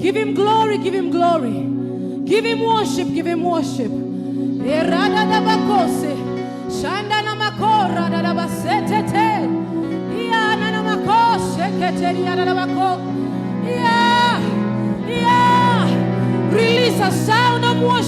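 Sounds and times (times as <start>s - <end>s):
sustained accompaniment chords: 0.0s - 18.0s.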